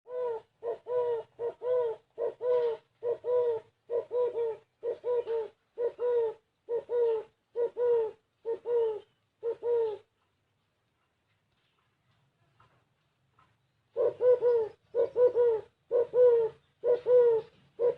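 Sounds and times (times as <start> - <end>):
dove cooing: 0.1 - 10.2, 13.9 - 17.9.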